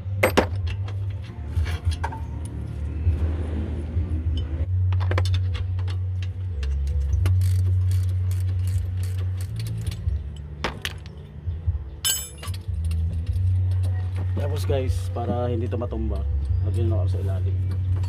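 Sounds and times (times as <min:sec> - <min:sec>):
metal tools clinking: 0:12.0 - 0:14.0.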